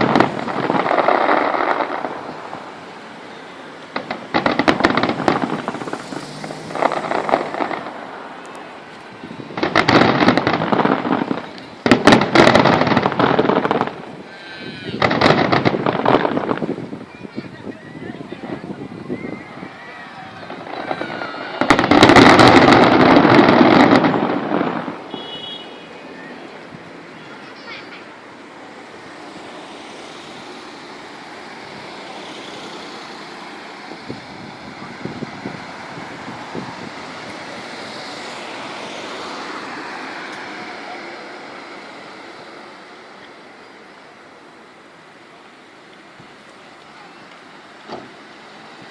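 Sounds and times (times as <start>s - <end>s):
firework bang: 0.0s - 2.9s, 3.9s - 8.4s, 9.0s - 17.5s, 18.4s - 25.8s
fireworks crackling: 0.0s - 48.9s
steady rushing noise: 0.0s - 48.9s
distant firework thump: 4.0s - 8.0s, 47.8s - 48.2s.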